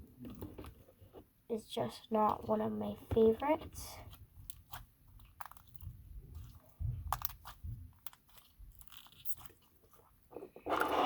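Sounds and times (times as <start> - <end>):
soft low thumps: 5.9 - 8.0.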